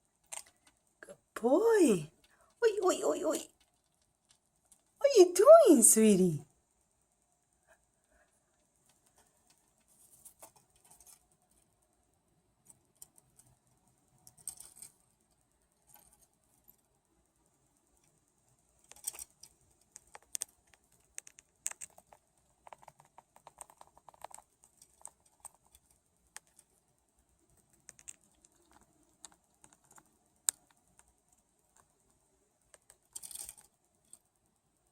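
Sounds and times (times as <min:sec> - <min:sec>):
bird pecking clicks and taps: 0:19.9 - 0:25.8, 0:27.6 - 0:31.1.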